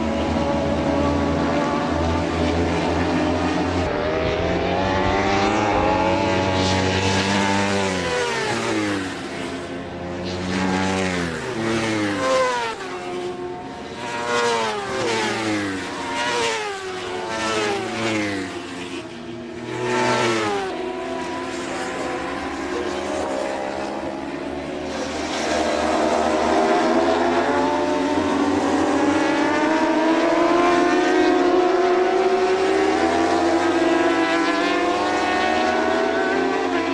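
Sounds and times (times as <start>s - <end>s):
racing motorcycle engines revving: 0.0s - 36.9s.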